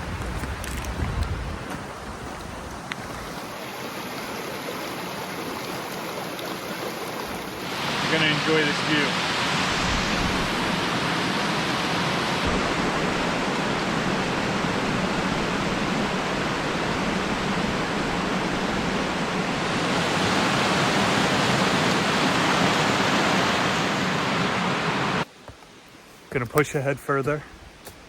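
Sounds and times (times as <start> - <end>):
waterfall rushing: 3.2 - 25.2.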